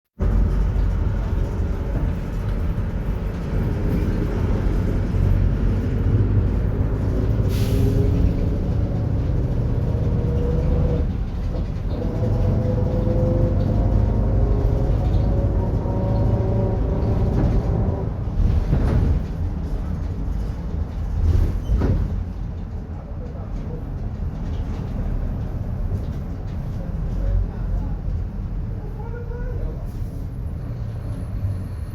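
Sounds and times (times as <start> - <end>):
bus differential whine: 24.9 - 31.9.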